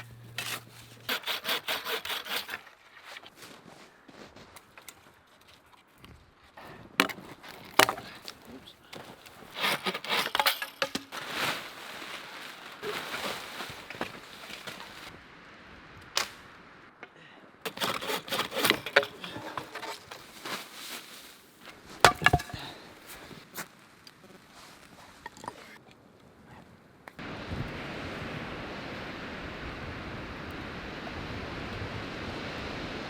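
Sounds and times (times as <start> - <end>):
rustling: 0.0 - 15.2, 17.7 - 25.8
wood being chopped: 7.0 - 8.4, 17.7 - 20.1, 22.0 - 22.8.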